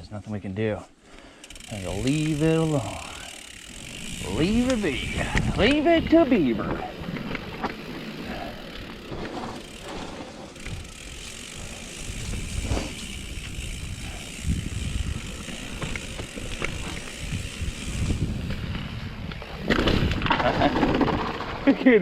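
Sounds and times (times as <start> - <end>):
bike tyres rolling on dirt: 0.3 - 22.0
bike rattling: 1.1 - 22.0
hub ratchet clicking: 1.2 - 6.5, 7.2 - 18.5
heavy bumps: 3.8 - 21.7.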